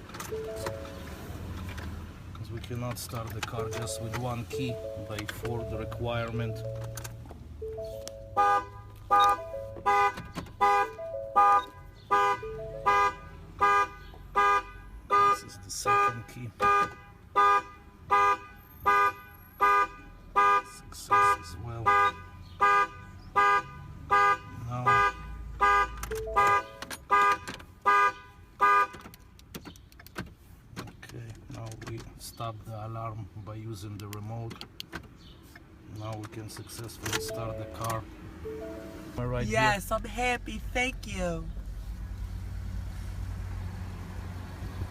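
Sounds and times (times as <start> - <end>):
car horn honking: 3.5 - 29.3, 37.2 - 40.2.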